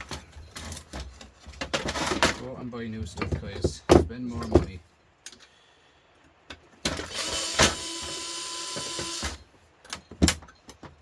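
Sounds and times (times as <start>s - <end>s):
power drill whining: 7.0s - 9.4s.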